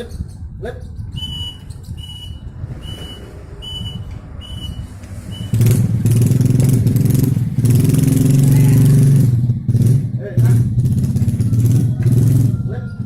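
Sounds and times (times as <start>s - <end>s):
short high beeps: 1.2s - 5.6s
small engine running loud: 5.5s - 13.0s.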